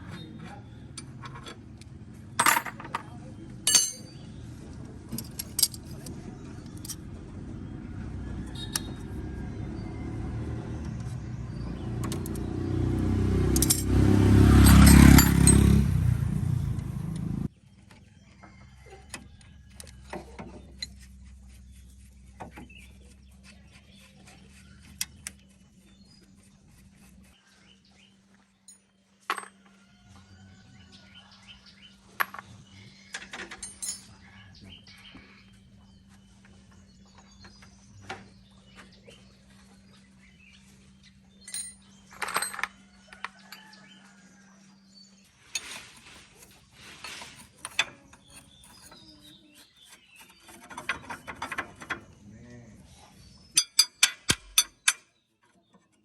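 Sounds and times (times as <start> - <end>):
loud low mechanical rumble: 0.0 - 17.9
hand tools tapping metal: 2.4 - 4.2, 5.1 - 7.0, 13.4 - 17.4, 33.1 - 34.1, 41.4 - 43.5, 45.5 - 52.2, 53.5 - 56.0.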